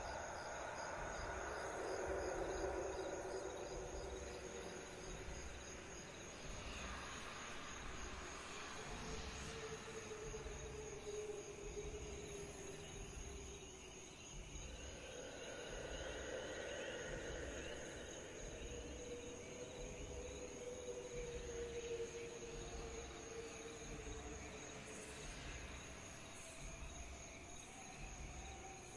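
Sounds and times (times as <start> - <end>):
low drone: 0.0 - 13.1
crickets trilling: 0.0 - 28.9.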